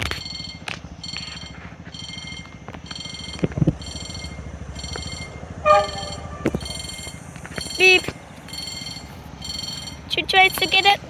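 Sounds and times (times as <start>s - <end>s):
low rumble: 0.0s - 10.1s
level-crossing warning bell: 0.0s - 11.0s
short loud tone: 5.6s - 7.1s.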